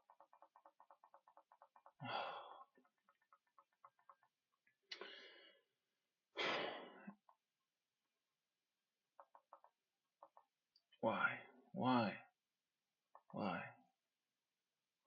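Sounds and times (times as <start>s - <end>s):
faint rapid clicking: 0.0s - 5.7s, 7.1s - 11.0s
person sighing heavily: 6.4s - 7.1s.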